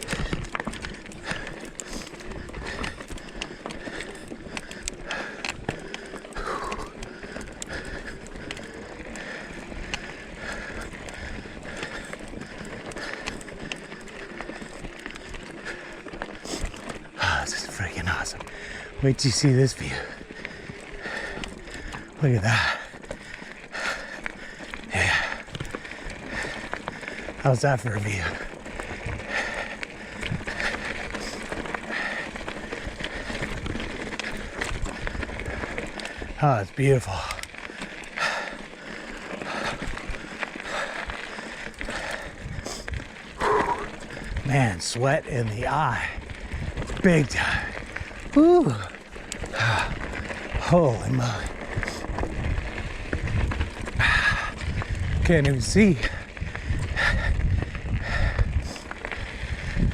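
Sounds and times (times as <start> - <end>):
bike tyres crunching on rock: 0.0 - 59.9
wind rumble on microphone: 30.1 - 31.4, 41.9 - 44.5, 45.5 - 48.4, 49.4 - 59.9.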